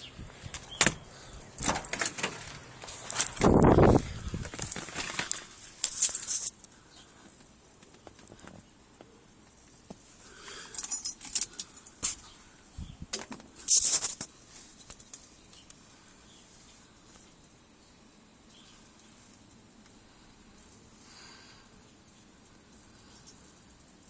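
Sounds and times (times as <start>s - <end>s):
light metallic jingling: 0.0s - 6.5s, 10.6s - 12.5s, 22.9s - 23.7s.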